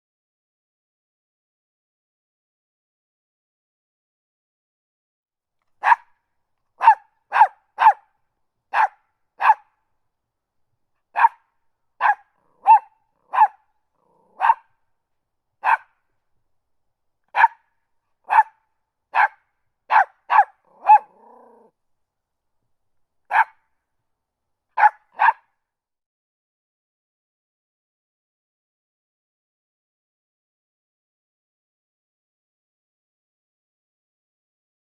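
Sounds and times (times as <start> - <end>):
small dog barking: 5.8 - 6.1, 6.8 - 8.1, 8.7 - 9.7, 11.1 - 14.7, 15.6 - 16.0, 17.3 - 21.7, 23.3 - 23.6, 24.8 - 25.6
dog growling: 14.0 - 14.5, 20.6 - 21.7.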